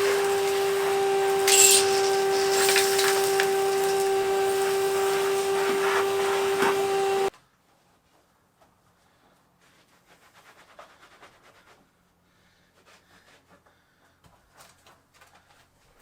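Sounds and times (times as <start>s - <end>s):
faint rustling and rubbing: 7.4s - 13.7s.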